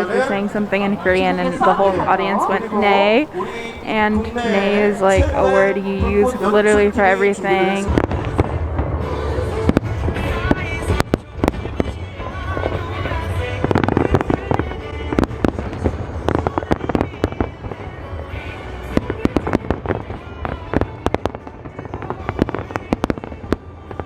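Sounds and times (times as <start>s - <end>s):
fireworks bangs and crackles: 0.0s - 24.0s
music playing: 0.0s - 24.0s.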